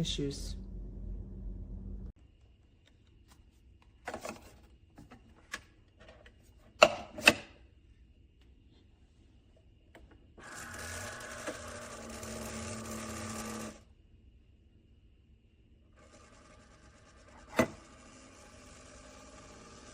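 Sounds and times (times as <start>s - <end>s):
coffee maker pump whirring: 10.4s - 13.9s, 15.9s - 19.9s.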